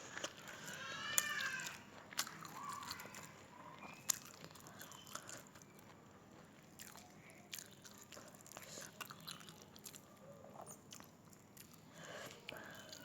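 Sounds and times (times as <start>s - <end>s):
person chewing and biting: 2.0s - 10.1s.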